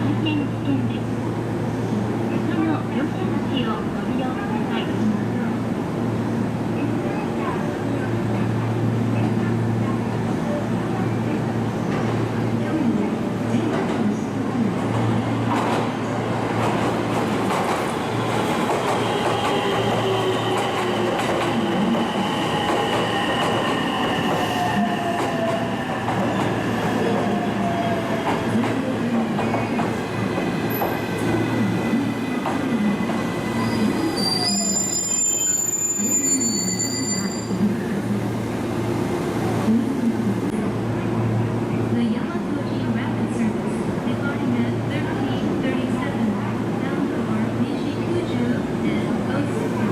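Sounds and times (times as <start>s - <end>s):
train rumbling: 0.0s - 36.2s
high-pitched squeals: 33.4s - 37.6s.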